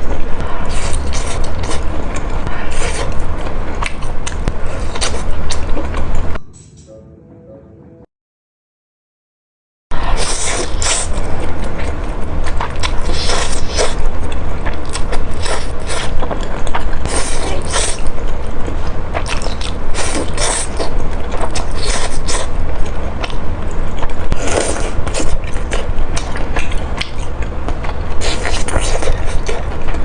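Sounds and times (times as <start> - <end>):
wet chewing and mouth clicks: 0.0 - 6.2, 10.1 - 30.0
steady low hum: 0.0 - 8.1, 9.9 - 30.0
slurping noodles: 19.2 - 20.9.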